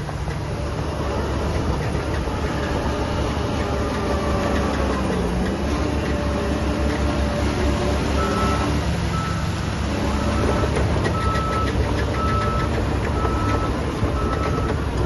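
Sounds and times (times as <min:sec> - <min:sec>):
diesel machinery running: 0:00.0 - 0:15.0
reversing alarm beeping: 0:08.2 - 0:09.5, 0:10.1 - 0:14.8.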